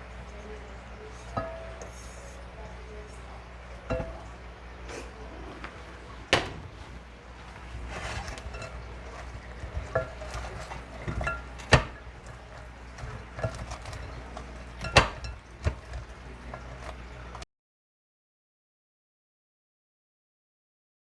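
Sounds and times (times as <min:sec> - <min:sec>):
utensil knocking against a bowl: 0:01.3 - 0:01.9, 0:03.9 - 0:04.3, 0:14.8 - 0:17.0.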